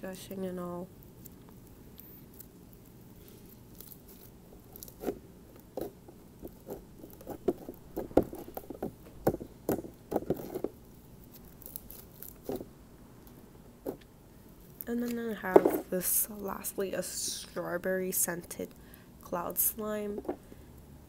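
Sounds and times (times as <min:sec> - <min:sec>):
slime crackling and popping: 0:01.0 - 0:15.2.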